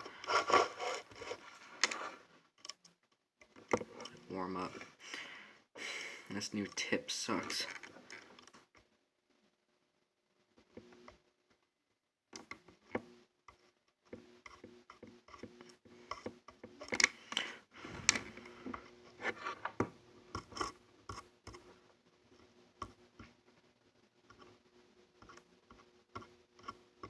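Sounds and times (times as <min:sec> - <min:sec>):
soldering clicks taps and scrapes: 0:12.3 - 0:17.5, 0:18.1 - 0:21.8, 0:24.2 - 0:24.6, 0:25.2 - 0:27.0.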